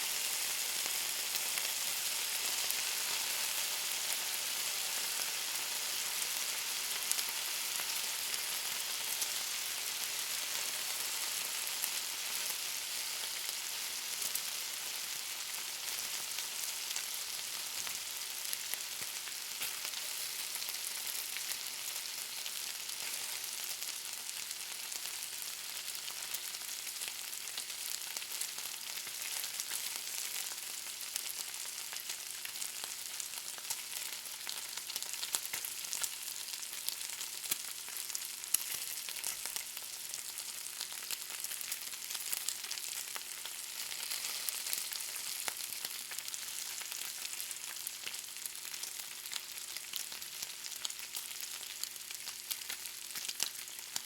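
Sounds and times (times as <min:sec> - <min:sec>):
bacon sizzling: 0:00.0 - 0:54.0.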